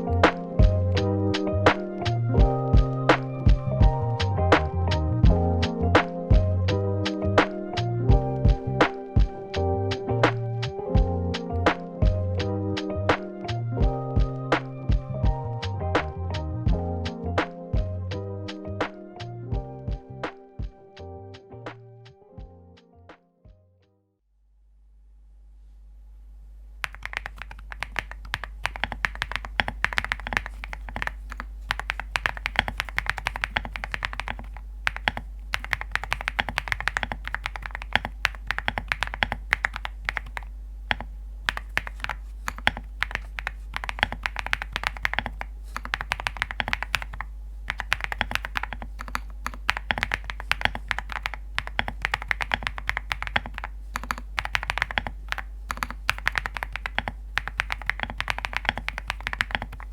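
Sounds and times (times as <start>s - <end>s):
fast typing on mechanical keyboard: 26.8s - 59.9s.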